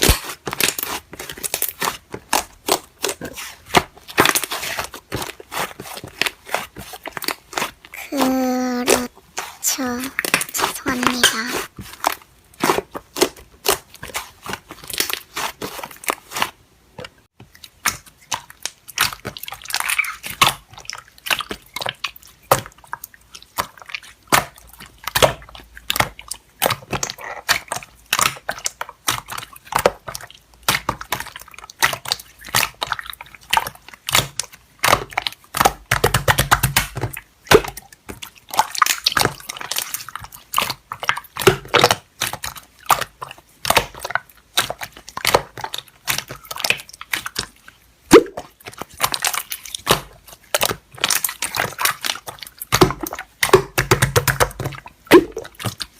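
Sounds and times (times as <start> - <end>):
slime wet squelches: 0.0 - 55.9
slime sticky clicks and crackles: 17.6 - 47.8, 48.4 - 55.9.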